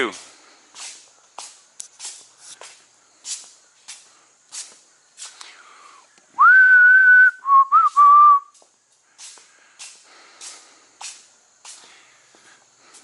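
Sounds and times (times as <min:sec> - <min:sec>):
person whistling: 0:06.4 - 0:08.6.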